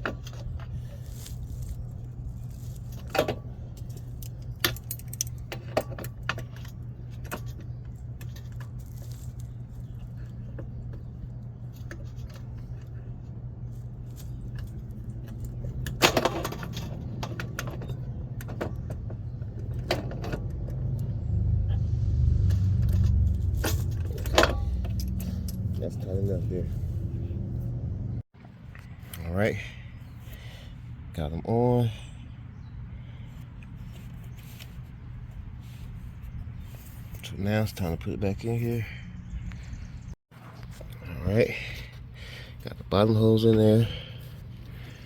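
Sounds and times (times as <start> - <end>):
steady low hum: 0.0 - 28.2
metal tools clicking: 3.8 - 6.7
low rumble: 20.5 - 28.2.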